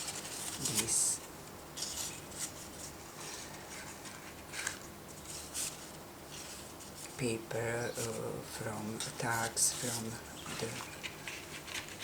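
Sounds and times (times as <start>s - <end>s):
paper rustling and sliding: 0.0s - 1.2s, 1.8s - 7.3s.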